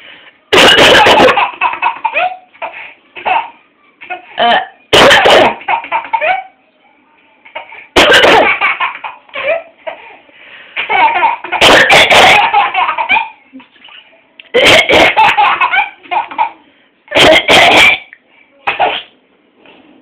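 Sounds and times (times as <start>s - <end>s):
woman coughing: 0.5s - 1.4s, 4.4s - 5.8s, 7.9s - 8.6s, 11.5s - 12.6s, 14.5s - 15.4s, 17.1s - 18.1s.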